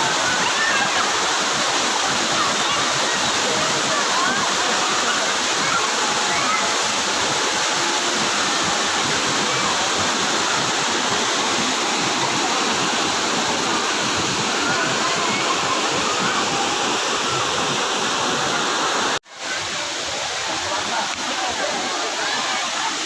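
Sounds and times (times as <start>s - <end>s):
waterfall rushing: 0.0s - 23.0s.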